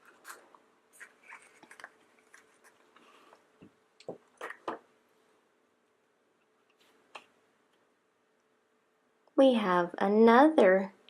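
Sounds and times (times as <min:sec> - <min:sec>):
clicks and crinkles of opening egg: 0:00.0 - 0:03.1.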